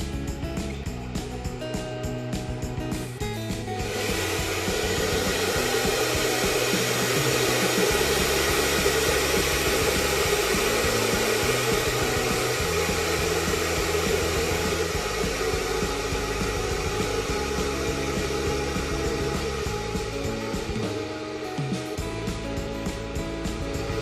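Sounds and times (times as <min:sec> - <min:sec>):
background music with bass: 0:00.0 - 0:24.0
boiler fan blower rushing: 0:03.8 - 0:22.4.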